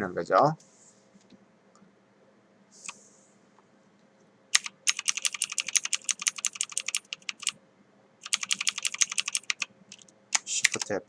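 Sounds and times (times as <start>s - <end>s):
computer keyboard typing: 4.6s - 7.6s, 8.2s - 11.0s.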